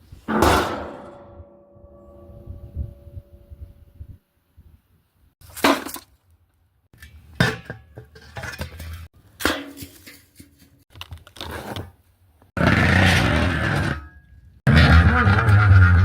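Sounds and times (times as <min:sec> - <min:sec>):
metallic clanking: 0:00.3 - 0:03.7.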